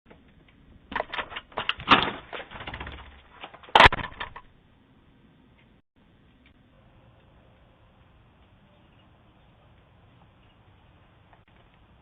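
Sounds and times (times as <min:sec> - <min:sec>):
rapid clicks and knocks: 0:00.1 - 0:04.6.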